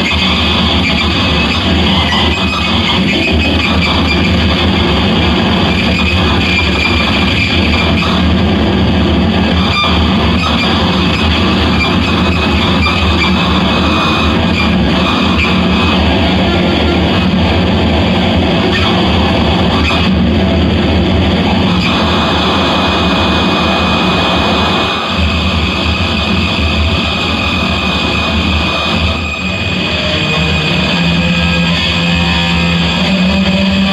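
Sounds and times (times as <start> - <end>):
harsh distorted noise music: 0.0 - 33.9.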